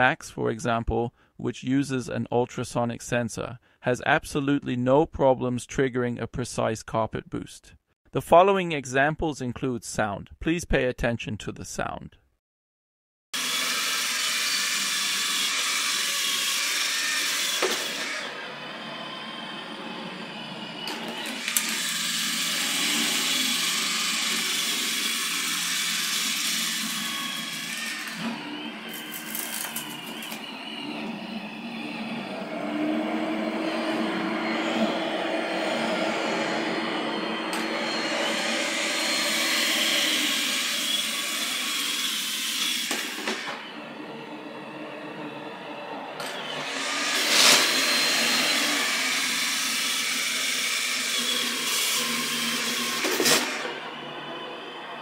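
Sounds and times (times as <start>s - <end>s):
robot vacuum motor hum: 13.4s - 55.0s.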